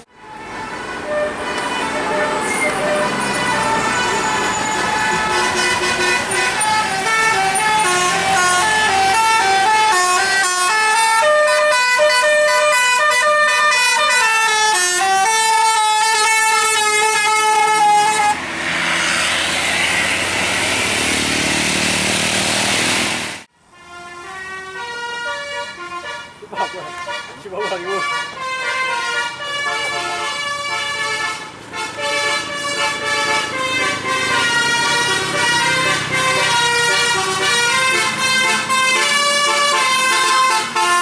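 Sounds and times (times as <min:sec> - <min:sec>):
multi-tone bus air horn melody: 0:00.0 - 0:19.4, 0:23.6 - 0:41.0.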